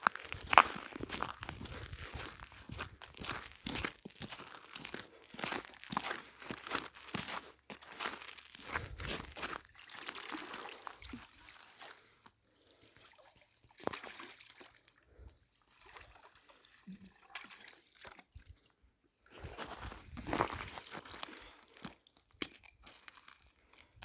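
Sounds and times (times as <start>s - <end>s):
water trickling and splashing: 7.8s - 23.9s.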